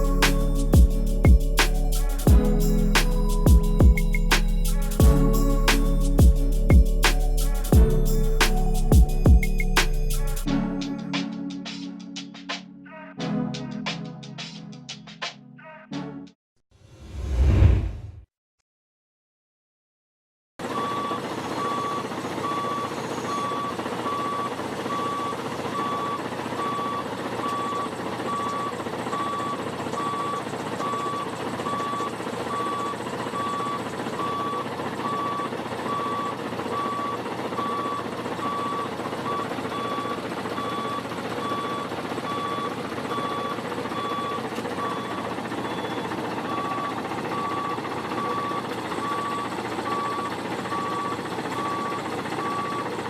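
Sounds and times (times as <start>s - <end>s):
vehicle engine running: 0.0s - 10.5s, 21.4s - 53.0s
reversing alarm beeping: 20.7s - 53.0s.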